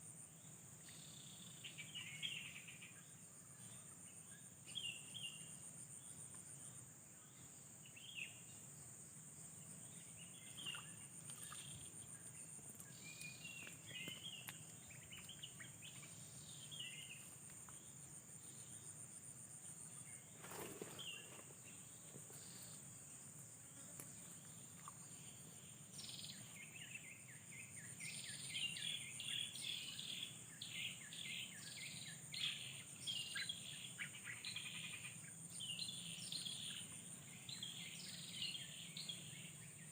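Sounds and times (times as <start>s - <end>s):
birds chirping: 9.7s - 22.8s.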